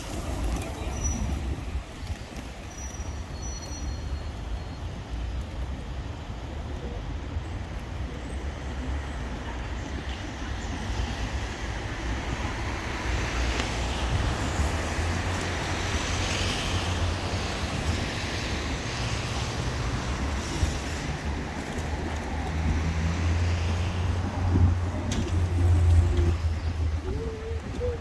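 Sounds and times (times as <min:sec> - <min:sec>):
pigeon wings fluttering: 0:00.0 - 0:02.8.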